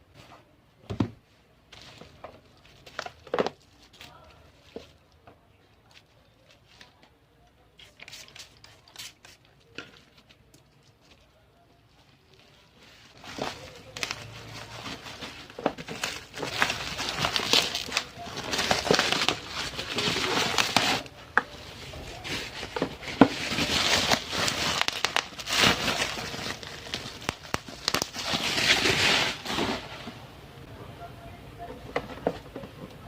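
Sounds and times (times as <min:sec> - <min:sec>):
packaging crinkling: 0:12.3 - 0:30.1
packaging tearing: 0:13.3 - 0:21.1, 0:22.1 - 0:29.9.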